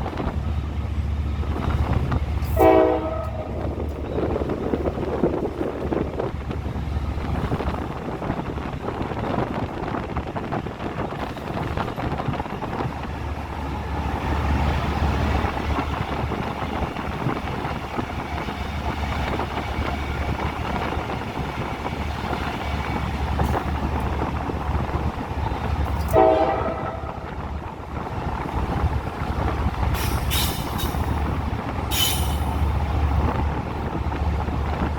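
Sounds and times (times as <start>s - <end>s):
train rumbling on rails: 0.0s - 34.9s
train horn blast: 2.4s - 3.8s, 26.0s - 27.4s.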